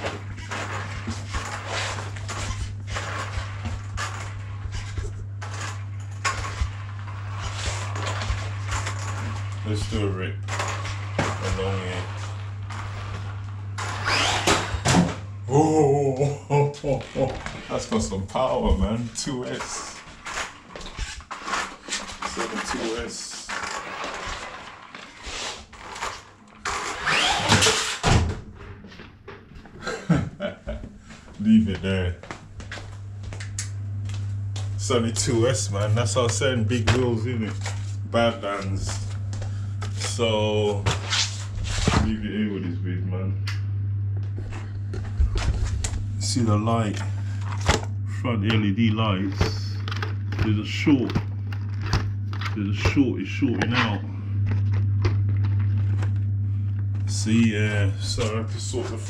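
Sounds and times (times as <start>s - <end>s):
tyres scraping and rolling: 0.0s - 15.1s, 17.0s - 28.0s
electric motor whirring: 0.0s - 15.2s, 17.0s - 28.0s.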